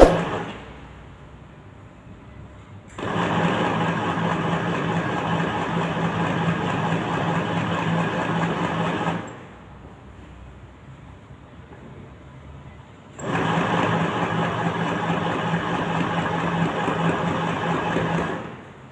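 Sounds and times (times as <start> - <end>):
electric sewing machine running: 3.0 - 9.3, 13.2 - 18.7.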